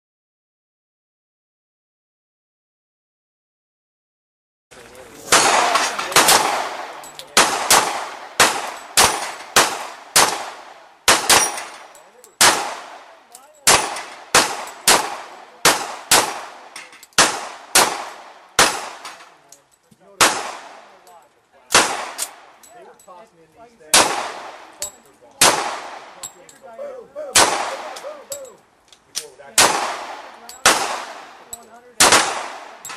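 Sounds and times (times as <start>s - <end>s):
gunshots ringing on steel targets: 5.3s - 19.4s, 29.5s - 32.9s.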